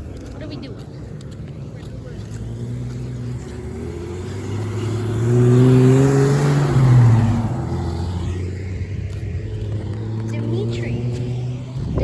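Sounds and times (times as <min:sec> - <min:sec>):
vehicle driving past: 0:01.1 - 0:12.0.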